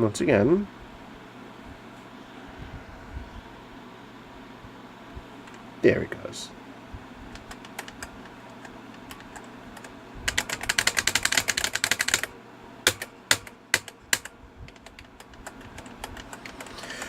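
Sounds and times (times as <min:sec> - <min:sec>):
typing on quiet keyboard: 0:07.3 - 0:12.3, 0:12.9 - 0:17.0.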